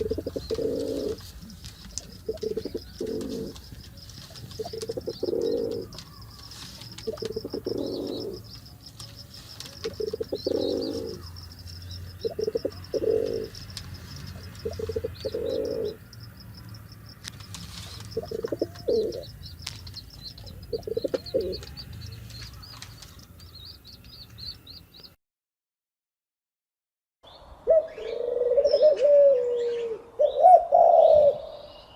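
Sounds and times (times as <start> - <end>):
pigeon cooing: 0.0 - 8.5, 9.4 - 11.4, 12.2 - 13.6, 14.3 - 16.0, 17.9 - 19.3, 20.2 - 21.8, 27.7 - 31.6
small birds chirping: 0.0 - 25.2.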